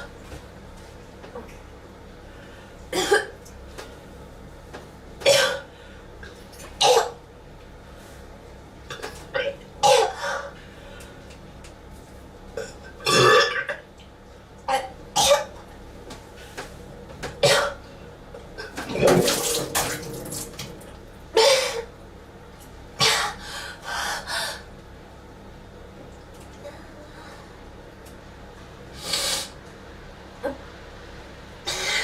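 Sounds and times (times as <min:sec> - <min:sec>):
person burping: 0:12.6 - 0:13.8.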